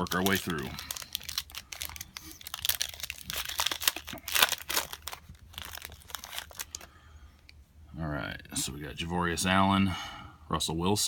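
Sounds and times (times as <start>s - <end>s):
wrapper crinkling and tearing: 0.0s - 6.9s.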